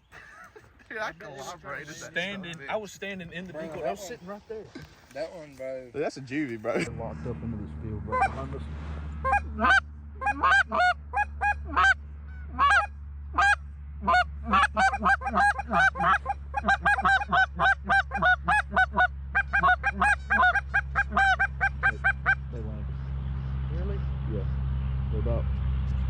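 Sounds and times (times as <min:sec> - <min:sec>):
goose honking: 0:06.6 - 0:24.2.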